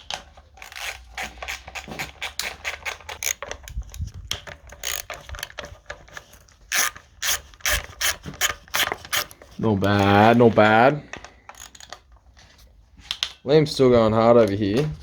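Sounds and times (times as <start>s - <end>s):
ratchet clicking: 0.6s - 10.4s, 11.5s - 12.0s.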